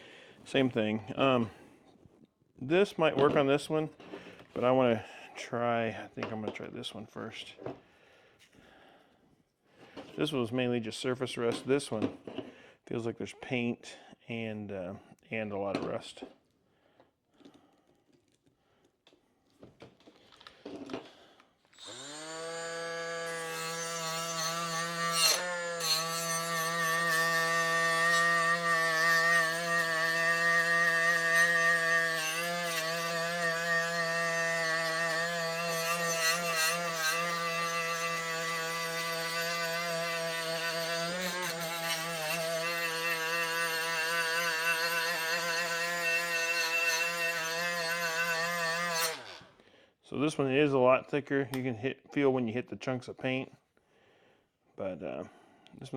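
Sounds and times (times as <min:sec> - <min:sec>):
angle grinder whining: 0:21.7 - 0:49.5
grinder disc on metal: 0:21.8 - 0:49.4.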